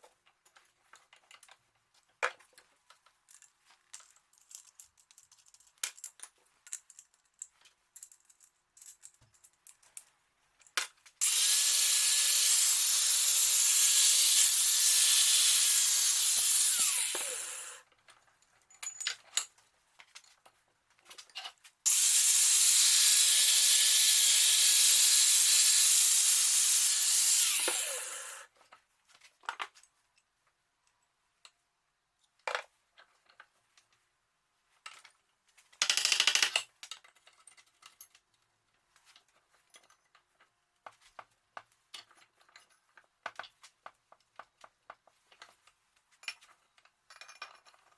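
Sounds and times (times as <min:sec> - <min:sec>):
parts clicking and knocking: 0:03.4 - 0:17.8, 0:35.8 - 0:37.1
power tool whining: 0:11.2 - 0:17.8, 0:21.9 - 0:28.5.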